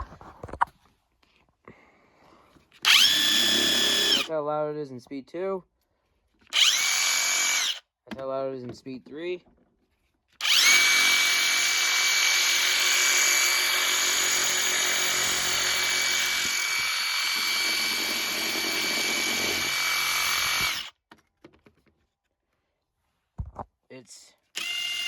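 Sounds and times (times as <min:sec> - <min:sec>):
impact wrench whining: 0:02.8 - 0:04.3, 0:06.5 - 0:07.8, 0:10.4 - 0:20.9, 0:24.6 - 0:25.0.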